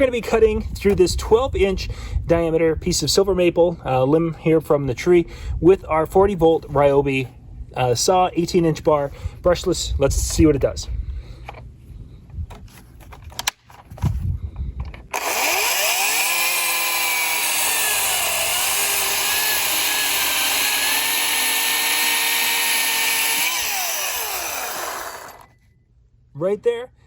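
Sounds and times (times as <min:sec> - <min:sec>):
chainsaw cutting wood: 0:15.1 - 0:25.5.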